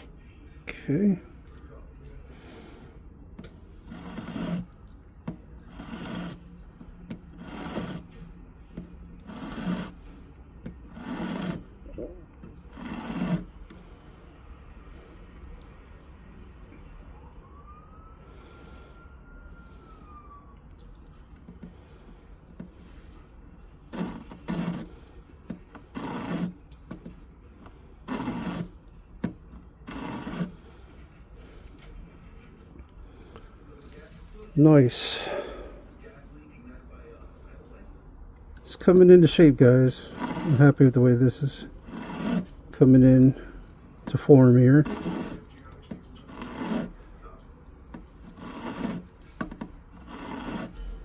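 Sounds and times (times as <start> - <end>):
hand file rasping on metal ring: 3.8 - 4.8, 5.4 - 8.2, 9.1 - 10.1, 10.7 - 11.8, 12.5 - 13.9, 23.9 - 25.1, 25.7 - 27.1, 28.0 - 28.8, 29.5 - 30.6, 39.2 - 43.4, 44.1 - 47.0, 47.9 - 51.0.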